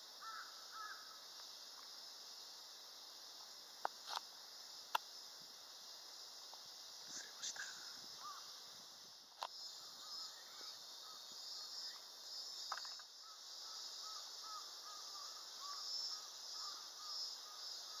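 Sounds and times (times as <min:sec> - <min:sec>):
steady high-pitched hiss: 0:00.0 - 0:18.0.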